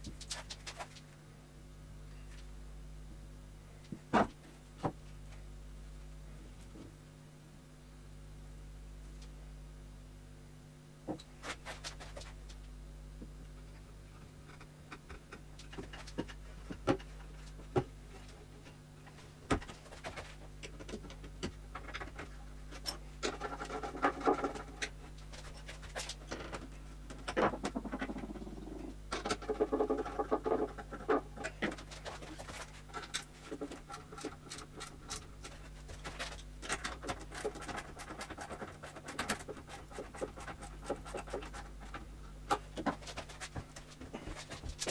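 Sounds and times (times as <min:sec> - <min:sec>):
scraping and rubbing: 0:00.0 - 0:01.1, 0:11.3 - 0:12.5, 0:14.4 - 0:26.8, 0:27.5 - 0:44.9
steady low hum: 0:00.0 - 0:44.9.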